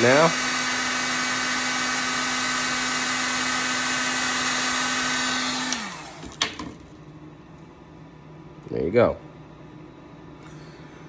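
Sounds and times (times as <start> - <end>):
heat gun blowing: 0.0 - 6.4
fan winding down: 0.0 - 6.9.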